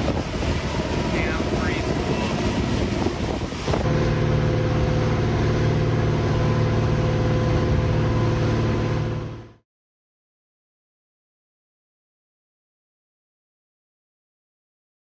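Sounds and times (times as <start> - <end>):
boat engine humming: 0.0 - 9.6.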